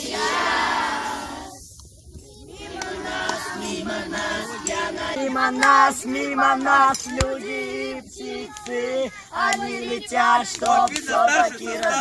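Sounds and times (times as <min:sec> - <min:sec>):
children singing in chorus: 0:00.0 - 0:01.6, 0:02.4 - 0:12.0.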